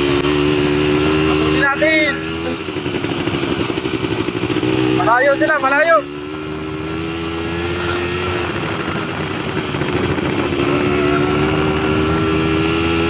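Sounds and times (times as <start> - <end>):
atv engine running: 0.0 - 13.0
road noise: 0.0 - 13.0.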